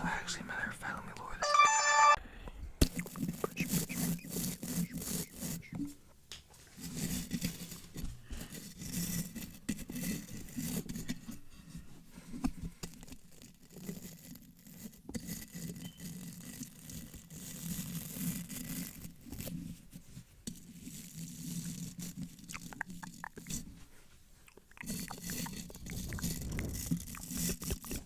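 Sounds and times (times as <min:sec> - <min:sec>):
wet mouth sounds: 0:22.4 - 0:23.8, 0:24.4 - 0:28.0
microphone brushing and scratching: 0:25.2 - 0:28.0.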